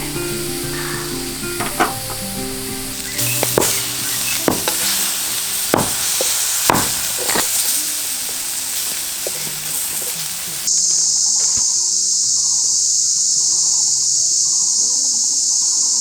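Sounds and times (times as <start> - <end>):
background music: 0.0 - 9.9
meat sizzling on a grill: 0.0 - 11.9
fat popping: 3.0 - 10.6.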